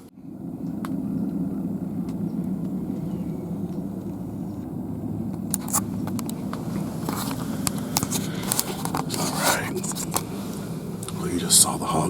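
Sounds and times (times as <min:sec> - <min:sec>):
low vehicle rumble: 0:00.0 - 0:12.0
sharp clicks and handling noises: 0:05.3 - 0:11.2.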